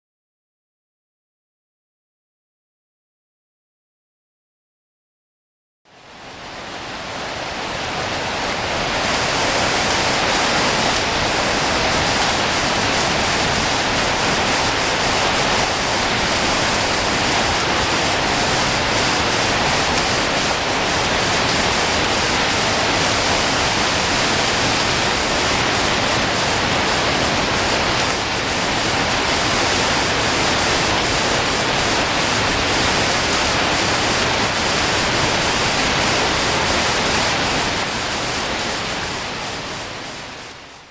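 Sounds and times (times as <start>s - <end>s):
hail and rain pelting: 8.4s - 40.2s.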